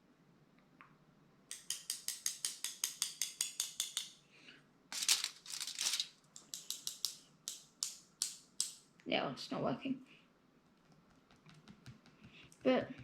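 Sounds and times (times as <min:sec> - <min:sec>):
crinkling rustle: 0:04.9 - 0:06.2.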